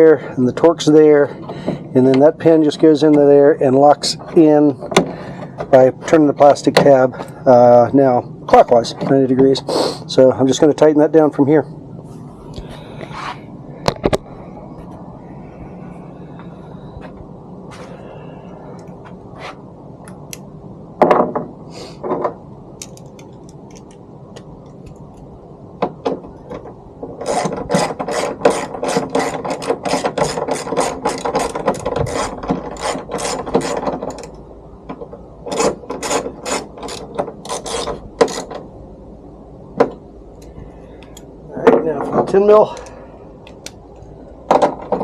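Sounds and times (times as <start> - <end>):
ratchet wrench clicking: 35.5 - 38.5.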